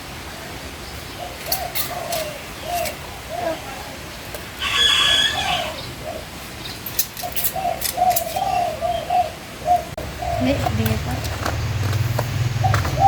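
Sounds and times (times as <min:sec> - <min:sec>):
bird cooing: 0:01.2 - 0:06.4, 0:07.2 - 0:11.2, 0:12.6 - 0:13.0
higher bird call: 0:01.3 - 0:06.3.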